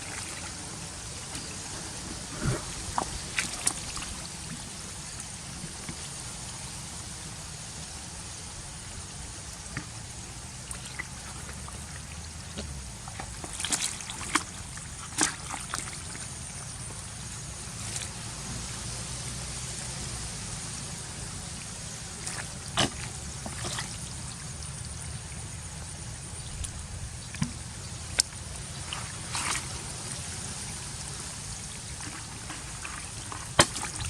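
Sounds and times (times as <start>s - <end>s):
water trickling and splashing: 0.0s - 7.5s, 8.6s - 20.2s, 20.8s - 34.0s
steady background noise: 0.0s - 34.0s
sharp splashes: 2.3s - 4.6s, 13.0s - 16.2s, 22.1s - 24.4s, 27.3s - 34.0s.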